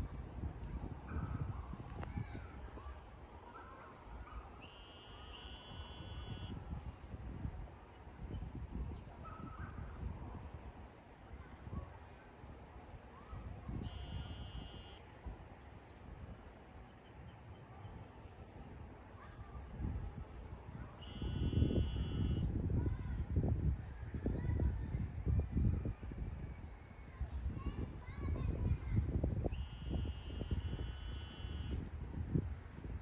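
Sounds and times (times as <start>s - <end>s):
gusty wind on microphone: 0.0s - 3.4s, 5.7s - 16.7s, 17.9s - 33.0s
distant short calls: 1.2s - 6.7s, 20.9s - 22.5s, 29.5s - 31.9s.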